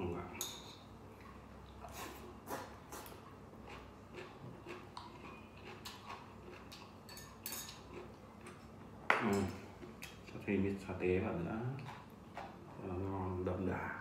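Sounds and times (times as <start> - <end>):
chewing: 1.1 - 8.9, 11.7 - 13.2.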